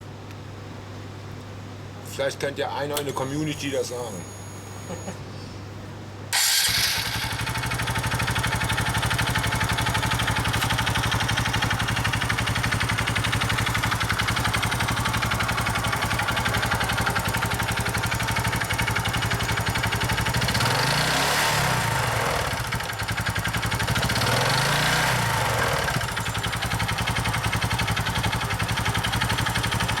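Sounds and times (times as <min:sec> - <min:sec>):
engine chattering noise: 0:06.4 - 0:30.0
motorcycle engine idling and revving: 0:06.4 - 0:30.0.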